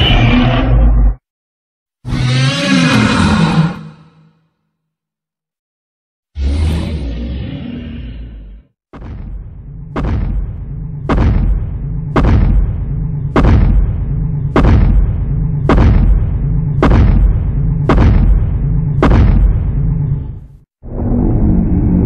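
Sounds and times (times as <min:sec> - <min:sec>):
deep booming monster impacts: 0:08.9 - 0:22.0.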